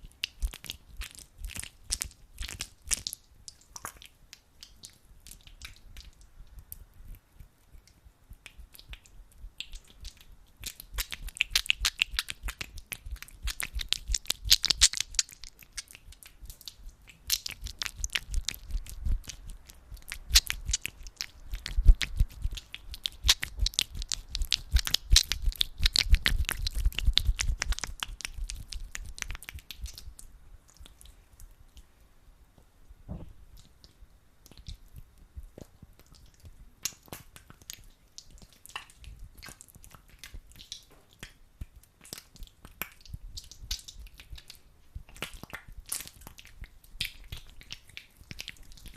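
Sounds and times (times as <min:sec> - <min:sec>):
hands rubbing sticky gel: 0:07.1 - 0:31.1.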